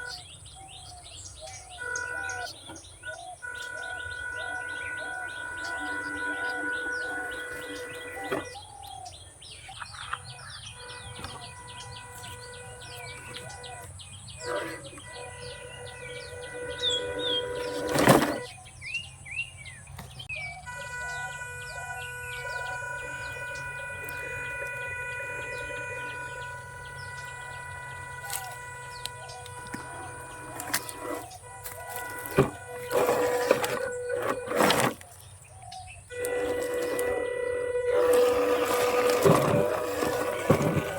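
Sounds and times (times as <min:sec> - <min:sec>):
birds chirping: 0:00.0 - 0:40.9
steady high whine: 0:03.4 - 0:08.6, 0:20.6 - 0:35.0, 0:36.1 - 0:40.9.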